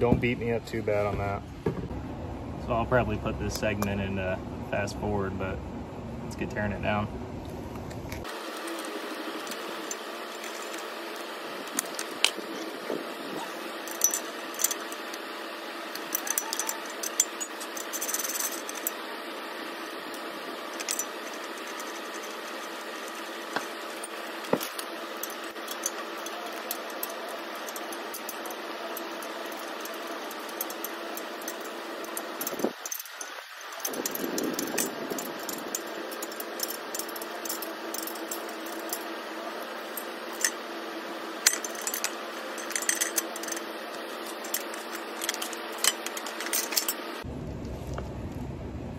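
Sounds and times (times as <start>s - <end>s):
hand tools clicking and rattling: 8.2s - 40.7s, 41.4s - 47.3s.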